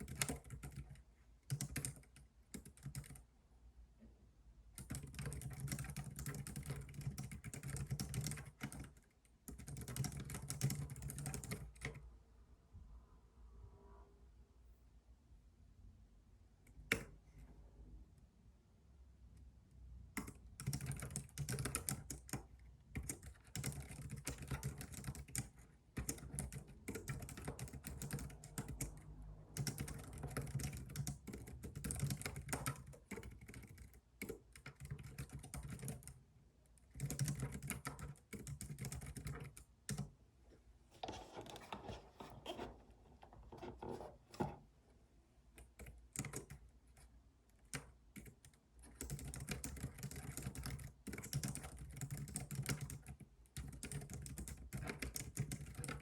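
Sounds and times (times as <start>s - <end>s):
computer keyboard typing: 0.0s - 3.2s, 4.8s - 12.0s, 20.2s - 36.2s, 36.9s - 40.1s, 45.6s - 56.0s.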